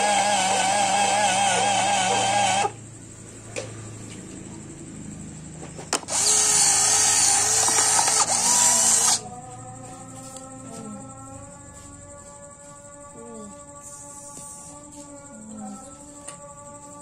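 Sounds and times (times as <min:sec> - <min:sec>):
small motors whirring: 0:00.0 - 0:02.8, 0:05.9 - 0:09.3.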